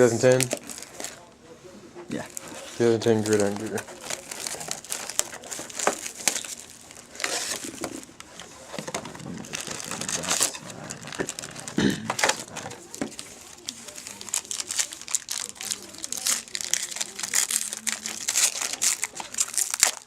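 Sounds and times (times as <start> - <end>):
packaging crinkling: 0.0 - 1.2, 2.1 - 20.0.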